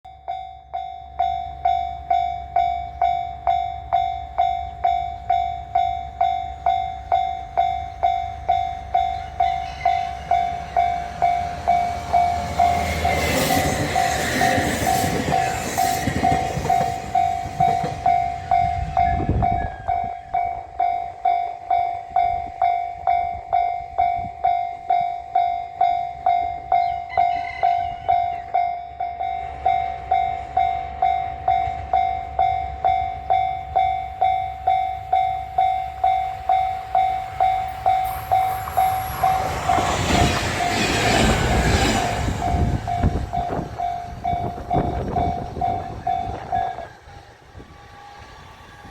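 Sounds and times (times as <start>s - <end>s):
level crossing alarm ringing: 0.0s - 48.9s
train wheels clattering: 11.2s - 18.6s.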